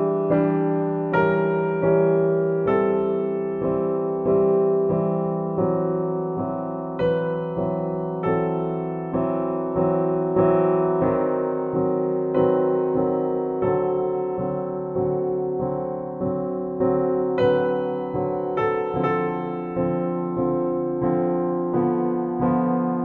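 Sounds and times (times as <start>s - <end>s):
slow gentle piano: 0.0s - 23.0s.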